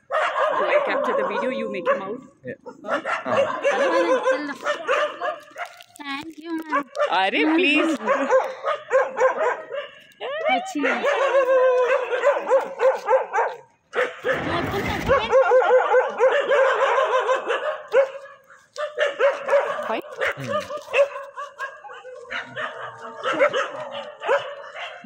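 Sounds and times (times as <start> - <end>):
dog barking: 0.0 - 5.8, 6.7 - 25.0
rustling: 4.4 - 7.1.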